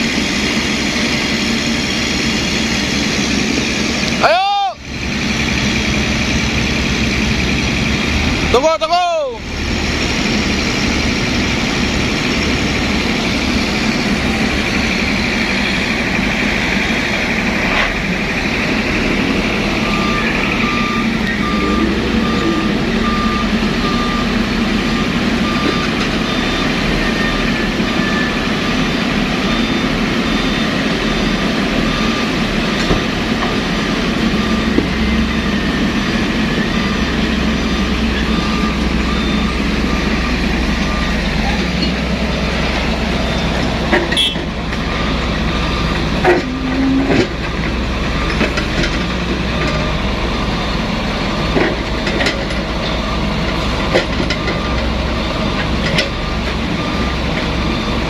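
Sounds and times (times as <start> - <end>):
heavy diesel machinery running: 0.0 - 58.0
reversing alarm beeping: 18.2 - 52.0, 52.6 - 58.0.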